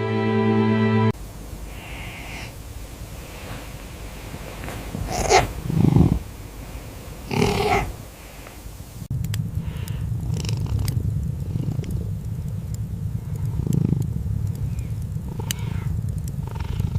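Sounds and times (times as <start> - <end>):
kitten purring: 4.9 - 6.3, 7.3 - 8.0, 9.6 - 12.2, 13.2 - 16.9
faint clicks: 8.4 - 16.9.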